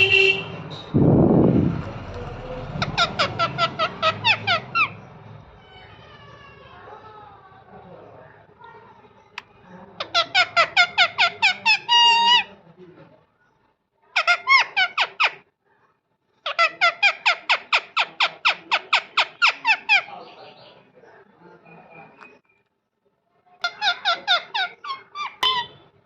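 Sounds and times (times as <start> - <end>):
parrot calling: 2.5 - 6.3, 10.0 - 12.5, 14.2 - 15.4, 16.4 - 20.2, 23.6 - 25.8.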